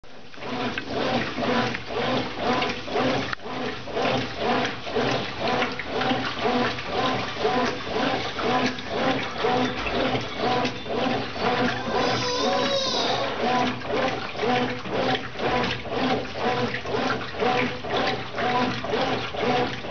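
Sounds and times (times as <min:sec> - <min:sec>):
washing machine water sloshing: 0:00.0 - 0:19.9.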